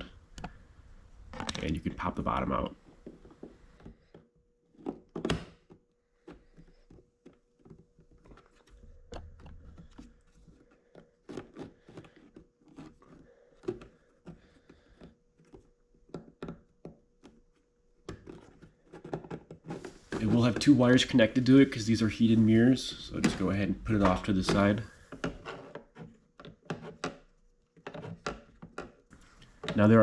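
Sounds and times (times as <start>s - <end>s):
plastic clicks and knocks: 24.0s - 29.9s.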